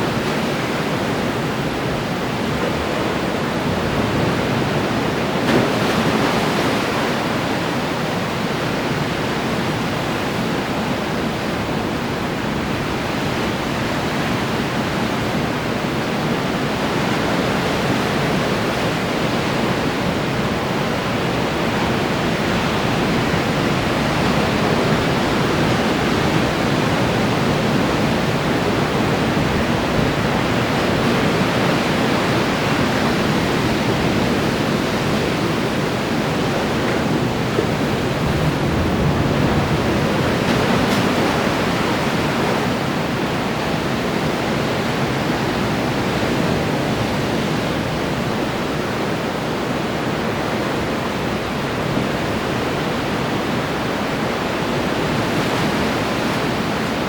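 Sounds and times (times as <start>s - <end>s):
ocean surf breaking: 0.0s - 57.0s.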